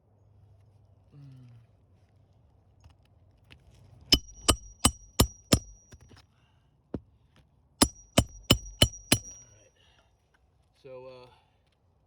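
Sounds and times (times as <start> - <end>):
hammer striking roofing nails: 4.2 - 6.0, 7.8 - 9.4.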